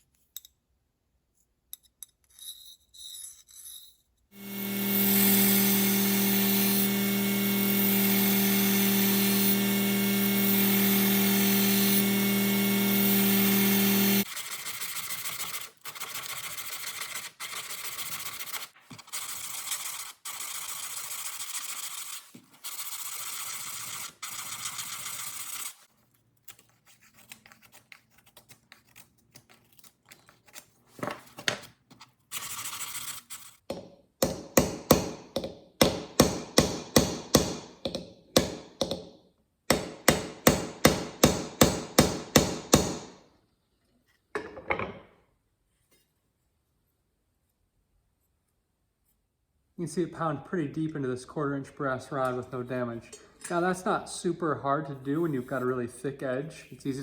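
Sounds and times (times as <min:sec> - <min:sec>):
power tool humming: 0:04.4 - 0:14.8
rubbing strokes on steel: 0:10.7 - 0:25.9.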